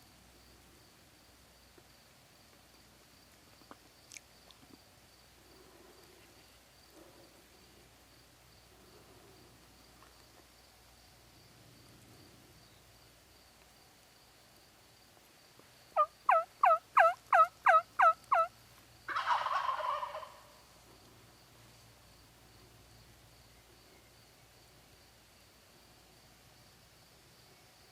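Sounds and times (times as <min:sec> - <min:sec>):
turkey gobbling: 0:16.0 - 0:18.5, 0:19.1 - 0:20.6
turkey yelps: 0:16.0 - 0:18.5, 0:19.1 - 0:20.5.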